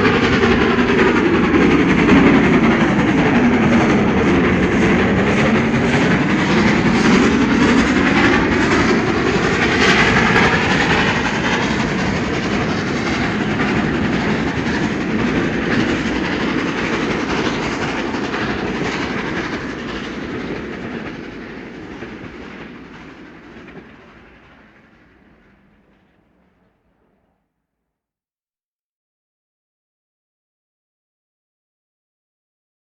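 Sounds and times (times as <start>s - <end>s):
train wheels clicking over rail joints: 0.0s - 26.1s
train rumble: 0.0s - 27.2s.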